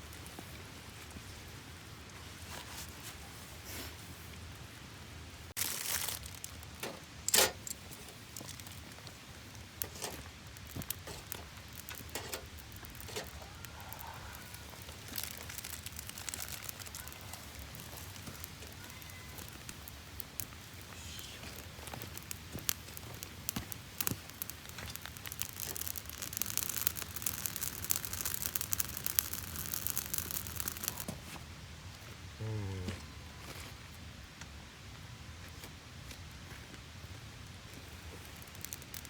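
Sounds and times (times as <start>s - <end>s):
campfire crackling and popping: 5.5s - 32.3s, 36.1s - 39.0s.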